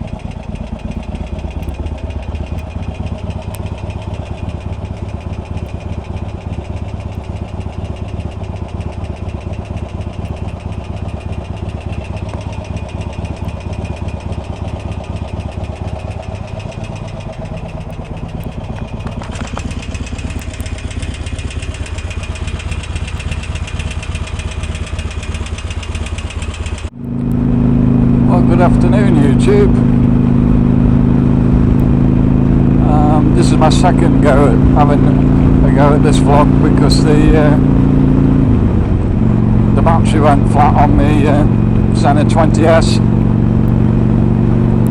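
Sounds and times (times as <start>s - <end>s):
motorcycle engine idling: 0.0s - 44.9s.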